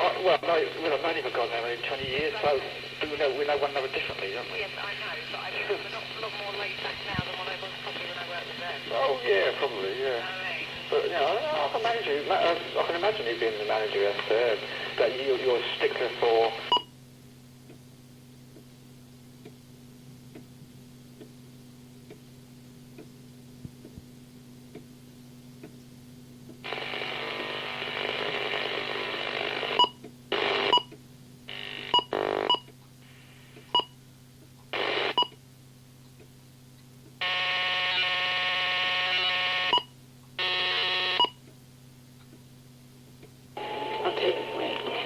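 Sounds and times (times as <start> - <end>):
radio hiss and buzzing tones: 0.0 - 16.8, 26.5 - 33.8, 34.7 - 35.3, 37.2 - 39.8, 40.4 - 41.3, 43.6 - 45.0
radio low steady hum: 0.0 - 25.7, 26.5 - 34.0, 34.7 - 35.4, 37.2 - 41.9, 42.6 - 45.0.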